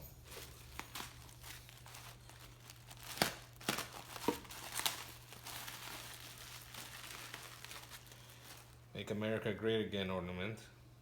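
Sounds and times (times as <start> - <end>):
packaging crinkling and rustling: 0.2 - 8.8.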